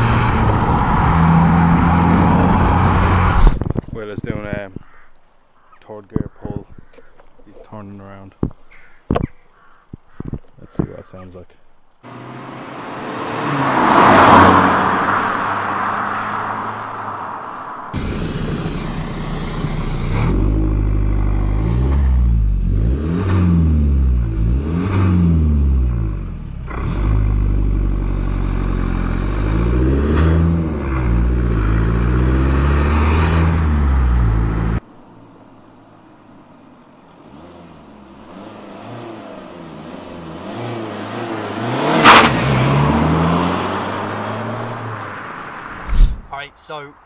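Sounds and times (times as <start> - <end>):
car passing close: 12.1 - 22.2, 37.1 - 46.4
car engine accelerating hard: 12.1 - 34.8, 37.1 - 45.2.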